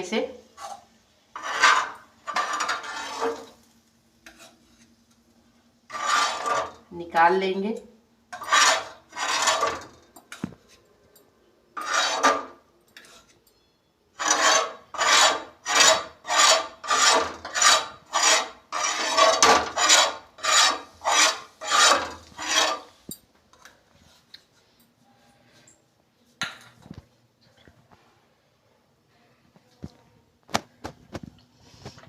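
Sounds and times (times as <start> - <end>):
utensil scraping a griddle: 0.6 - 5.0, 5.9 - 6.9, 8.3 - 10.0, 11.8 - 13.3, 14.2 - 23.0.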